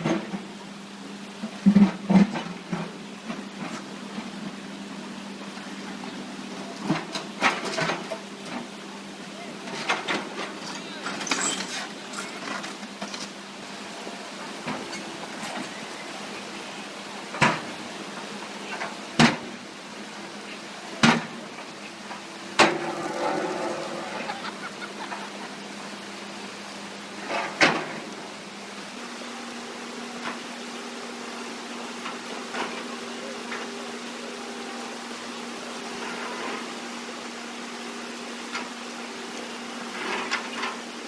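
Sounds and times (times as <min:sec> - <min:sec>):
constant rushing noise: 0:29.0 - 0:41.0
steady hum: 0:29.0 - 0:41.0.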